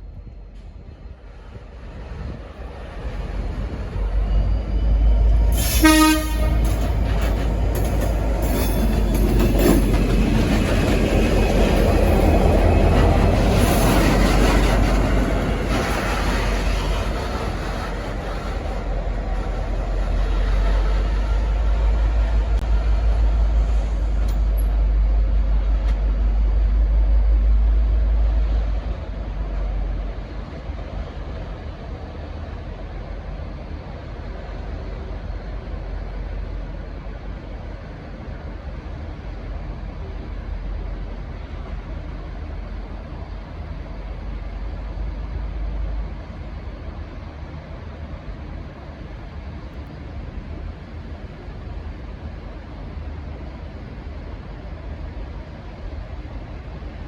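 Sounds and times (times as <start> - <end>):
diesel locomotive rumbling: 0.0 - 57.0
rail noise: 0.0 - 57.0
locomotive horn blast: 5.5 - 7.3.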